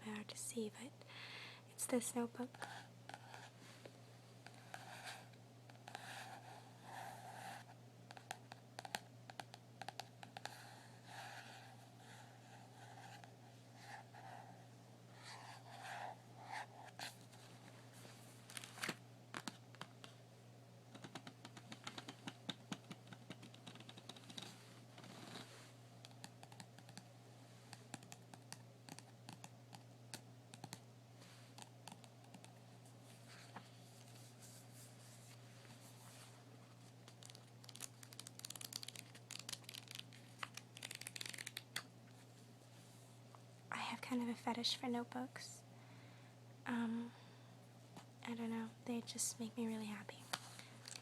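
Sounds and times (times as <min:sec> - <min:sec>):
faint low hum: 0:00.0 - 0:51.0
fingernails tapping on notebook: 0:08.1 - 0:10.6, 0:27.7 - 0:30.8.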